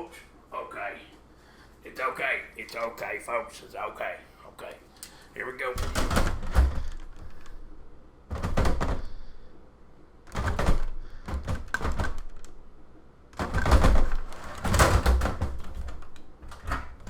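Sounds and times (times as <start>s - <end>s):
metal panel rattling against case: 13.4s - 17.0s.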